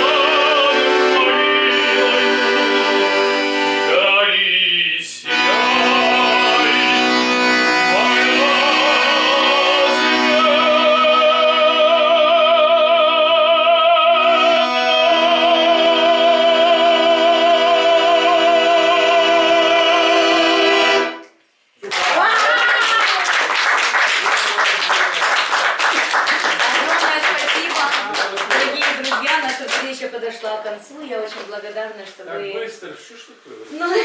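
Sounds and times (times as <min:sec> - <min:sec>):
instrumental accompaniment: 0:00.0 - 0:04.4, 0:05.2 - 0:12.6
person singing with vibrato: 0:00.0 - 0:21.2.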